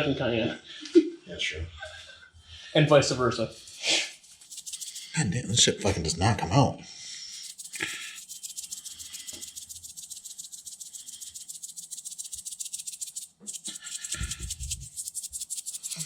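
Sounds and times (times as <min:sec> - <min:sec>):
spice shaker rattling: 0:03.6 - 0:05.4, 0:07.2 - 0:16.0.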